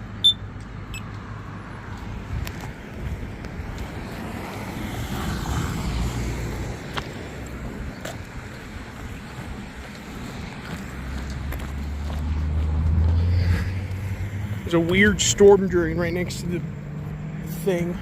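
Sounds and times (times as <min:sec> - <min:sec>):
road traffic passing: 0:00.0 - 0:18.0
vehicle passing by: 0:00.8 - 0:18.0
wind noise on microphone: 0:02.2 - 0:09.7.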